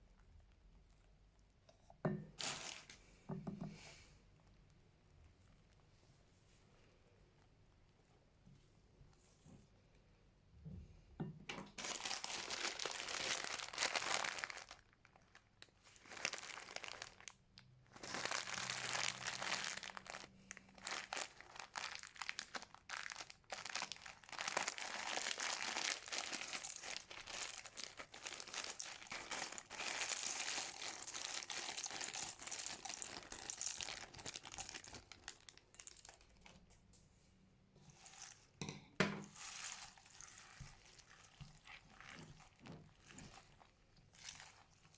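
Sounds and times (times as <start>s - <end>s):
slime crinkly crackling: 2.4s - 2.9s, 11.7s - 36.8s, 39.3s - 44.9s.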